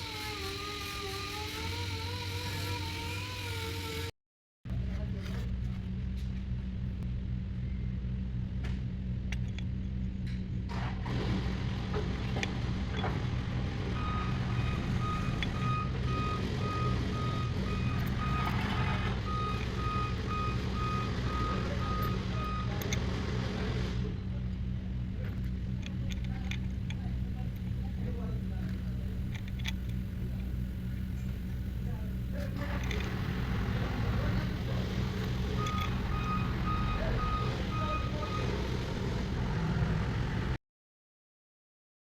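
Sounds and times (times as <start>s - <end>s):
truck engine running: 4.7s - 40.6s
reversing alarm beeping: 13.9s - 22.9s, 34.1s - 38.9s.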